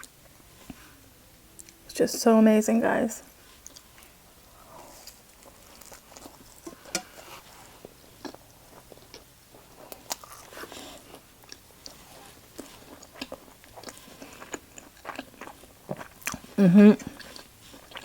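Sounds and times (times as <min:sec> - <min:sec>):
chewing and biting food: 0:05.0 - 0:06.9, 0:07.8 - 0:18.0.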